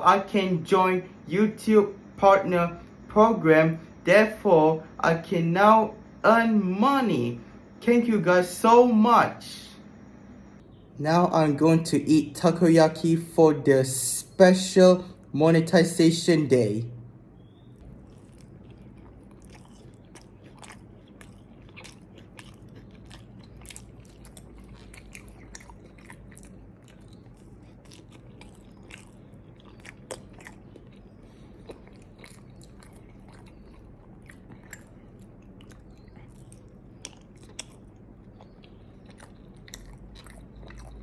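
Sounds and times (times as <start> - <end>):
low steady hum: 0.0 - 41.0
mouth clicks and chewing: 17.7 - 41.0.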